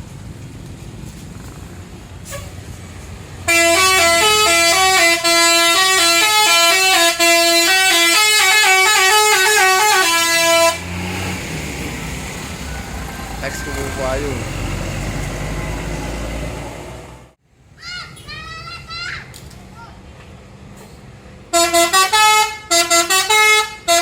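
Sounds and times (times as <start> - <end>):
musical bus horn melody: 3.4 - 11.1, 21.5 - 24.0.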